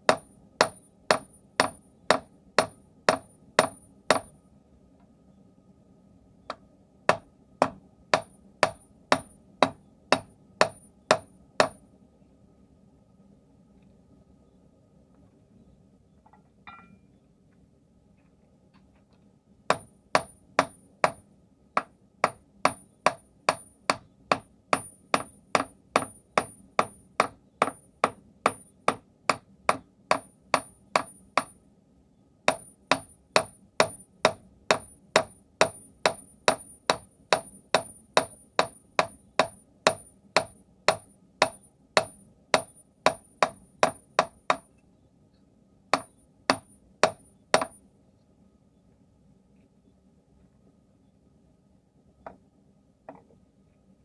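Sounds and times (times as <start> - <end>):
faint steady hum: 0.0 - 54.0
hammer striking steel on anvil: 0.1 - 4.3, 7.1 - 11.8, 16.7 - 17.1, 32.5 - 44.6, 46.0 - 47.8.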